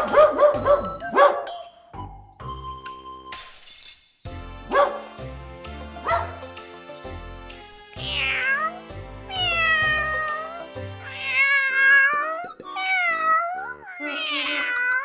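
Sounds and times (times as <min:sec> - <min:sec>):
background music: 0:00.0 - 0:03.7, 0:04.3 - 0:15.0
cat meowing: 0:08.0 - 0:15.0.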